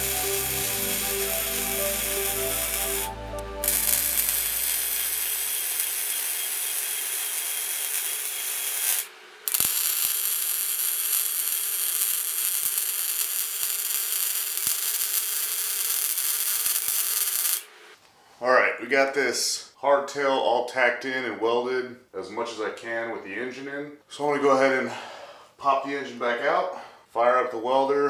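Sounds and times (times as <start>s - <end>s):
electric arc welding crackling: 0.0s - 18.0s.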